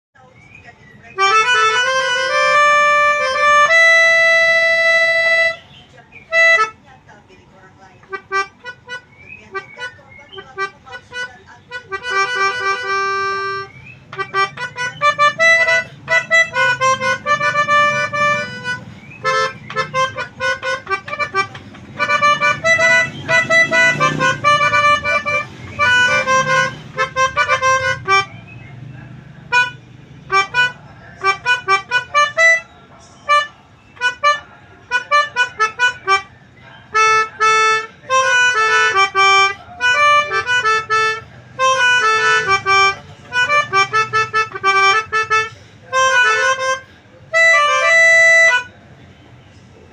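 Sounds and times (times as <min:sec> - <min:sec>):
multi-trumpet bus horn tune: 0:01.2 - 0:05.7, 0:12.0 - 0:28.3.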